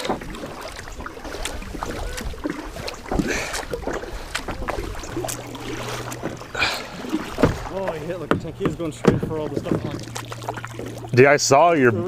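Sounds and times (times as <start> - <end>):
light knocks from boat: 0.0 - 11.2
water lapping against kayak: 0.0 - 12.0.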